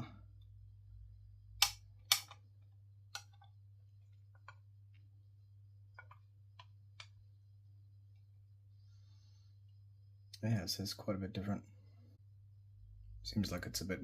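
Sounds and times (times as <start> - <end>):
steady low hum: 0.0 - 14.0
plastic parts clicking and tapping: 1.6 - 2.5, 3.1 - 5.1, 5.9 - 7.2.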